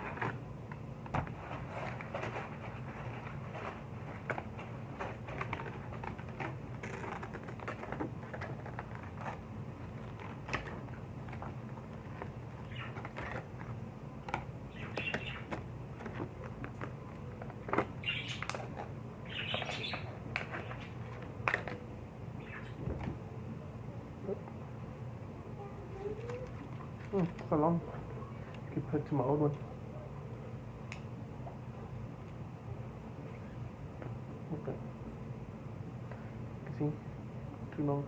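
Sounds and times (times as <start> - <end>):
low steady hum: 0.0 - 38.0
packaging crinkling and scratching: 1.3 - 21.8.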